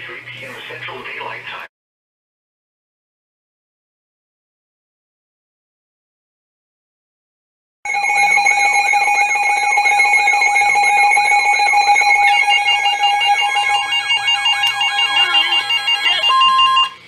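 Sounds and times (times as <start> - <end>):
electronic alert tones: 7.9 - 17.0.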